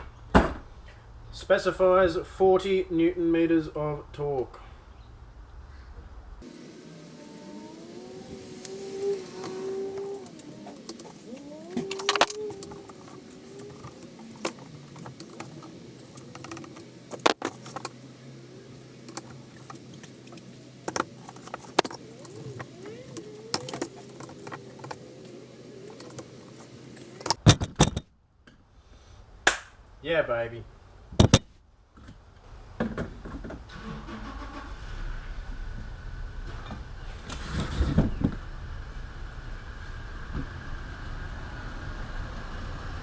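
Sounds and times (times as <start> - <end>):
squeaky creaking: 6.4 - 27.4
metal tools clinking: 6.6 - 27.4.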